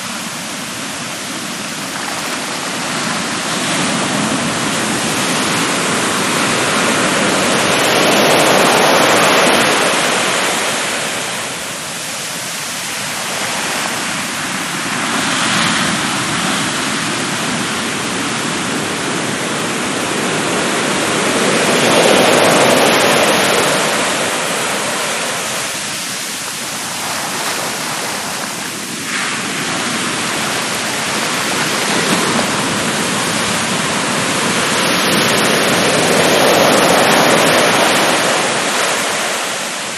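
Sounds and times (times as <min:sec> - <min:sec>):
surf washing up a beach: 0:00.0 - 0:39.9.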